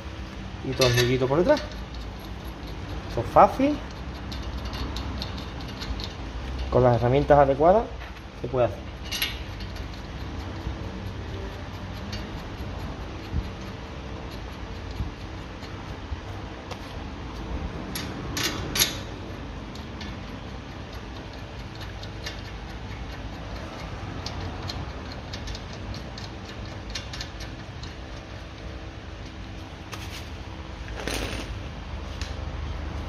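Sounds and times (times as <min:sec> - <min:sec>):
metallic clicks of tools and bolts: 0:00.6 - 0:16.0, 0:17.9 - 0:29.5
metal scrape: 0:29.9 - 0:31.7.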